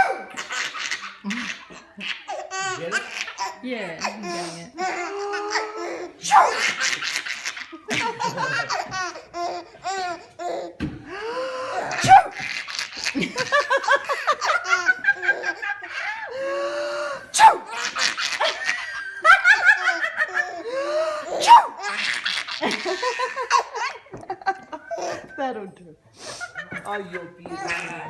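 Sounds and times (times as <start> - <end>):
adult sneezing: 0.0 - 0.3, 6.2 - 6.9, 11.4 - 12.5, 17.0 - 18.0, 21.3 - 21.8
baby laughing: 0.0 - 10.8, 11.4 - 16.7, 17.3 - 25.4, 26.6 - 28.0.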